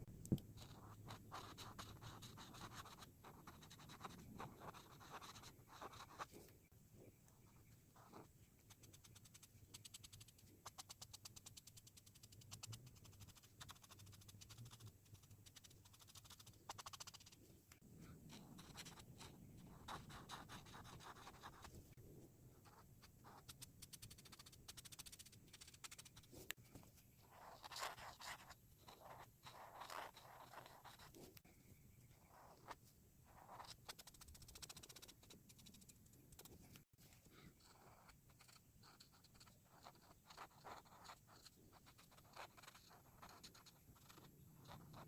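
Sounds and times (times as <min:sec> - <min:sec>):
coloring tool scratching paper: 0:00.6 - 0:06.4, 0:07.6 - 0:17.4, 0:18.0 - 0:21.8, 0:22.6 - 0:26.6, 0:27.2 - 0:31.4, 0:32.2 - 0:45.0.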